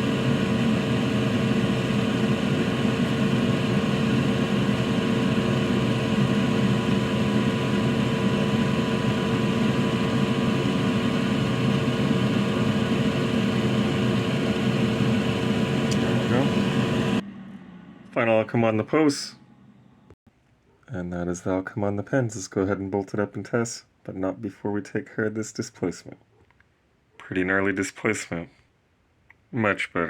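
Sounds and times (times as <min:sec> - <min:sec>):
fan whirring hum: 0:00.0 - 0:20.2.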